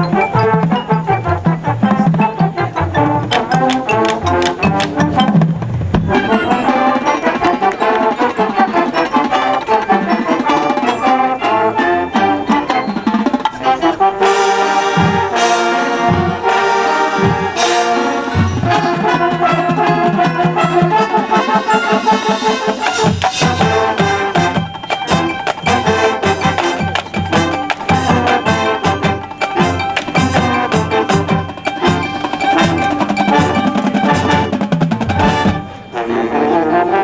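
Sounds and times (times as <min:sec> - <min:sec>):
quick drum strokes: 0:00.0 - 0:11.2, 0:12.7 - 0:36.0
marching band brass: 0:00.0 - 0:37.0.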